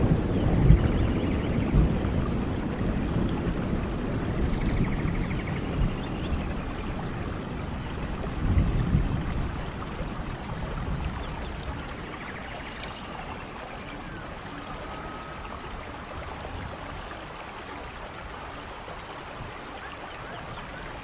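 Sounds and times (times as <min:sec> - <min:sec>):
steady rain: 0:00.0 - 0:21.0.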